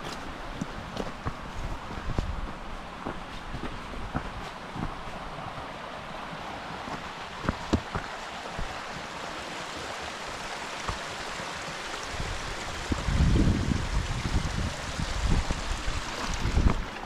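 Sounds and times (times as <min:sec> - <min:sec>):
running stream water: 0:00.0 - 0:17.0
wind buffeting microphone: 0:12.0 - 0:17.0.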